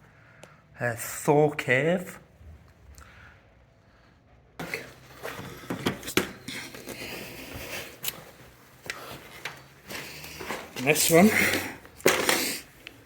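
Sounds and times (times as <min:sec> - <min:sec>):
objects knocking and clattering: 0:04.6 - 0:07.1, 0:09.3 - 0:12.6.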